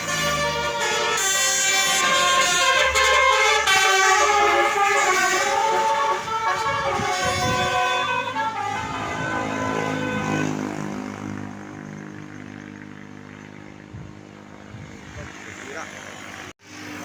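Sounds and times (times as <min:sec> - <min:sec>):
bus horn playing a tune: 0:00.0 - 0:11.4.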